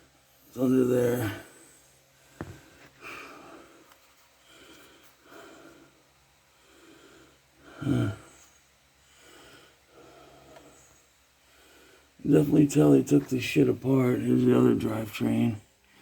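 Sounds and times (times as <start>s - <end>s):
man breathing: 1.1s - 12.2s
man grunting: 7.8s - 8.3s.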